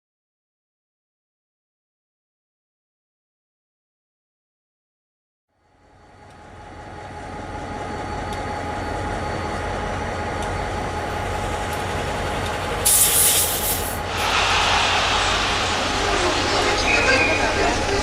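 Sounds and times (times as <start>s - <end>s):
faint steady whine: 5.5s - 18.0s
mechanical rumble: 6.2s - 18.0s
burst of hiss: 12.8s - 16.8s.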